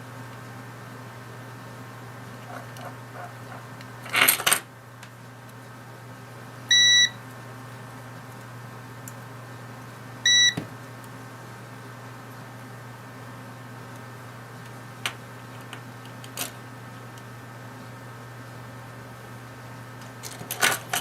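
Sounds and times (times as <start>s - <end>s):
multimeter beeps: 6.7s - 7.2s, 10.2s - 10.6s
rustling clatter: 20.0s - 21.0s.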